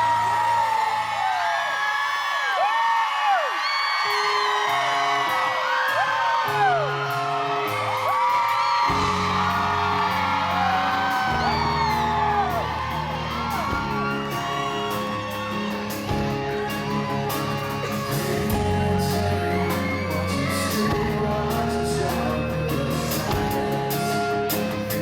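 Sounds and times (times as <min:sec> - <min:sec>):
audience whooping and screaming: 0:00.0 - 0:25.0
live rock band playing: 0:04.1 - 0:25.0.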